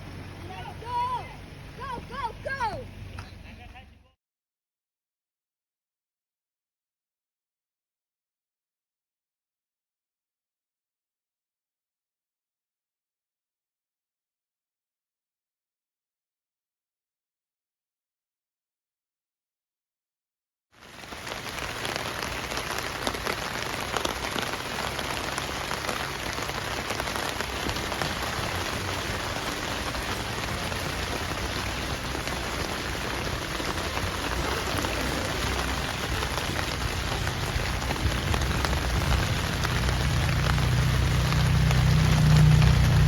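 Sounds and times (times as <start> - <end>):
steady rain falling: 0.0 - 3.8, 20.8 - 43.0
low rumble: 26.3 - 43.0.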